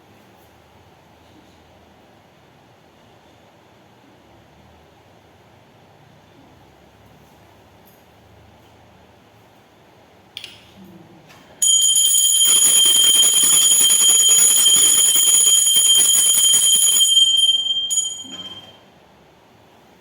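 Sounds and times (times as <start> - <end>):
temple bell ringing rapidly: 11.6 - 18.8.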